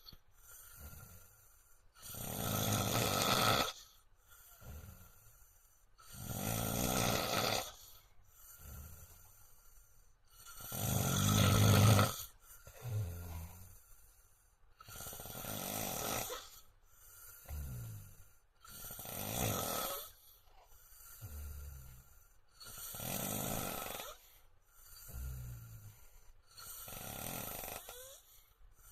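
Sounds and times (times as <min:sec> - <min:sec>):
faint breath sound: 0:00.0 - 0:02.5, 0:03.7 - 0:06.5, 0:07.6 - 0:15.6, 0:16.3 - 0:28.9
man snoring loudly: 0:02.0 - 0:05.3, 0:06.0 - 0:09.4, 0:10.3 - 0:13.9, 0:14.8 - 0:16.6, 0:17.2 - 0:20.3, 0:20.9 - 0:28.4.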